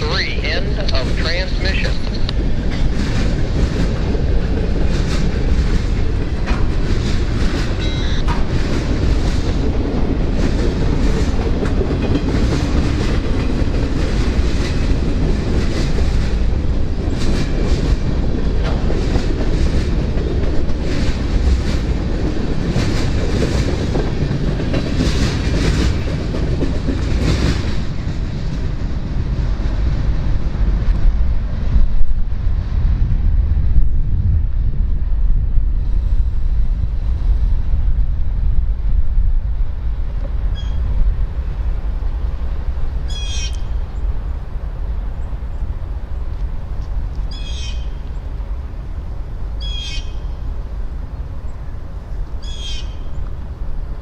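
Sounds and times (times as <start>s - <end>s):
freight train rumbling: 0.0s - 54.0s
wheels clicking over rail joints: 2.0s - 29.3s.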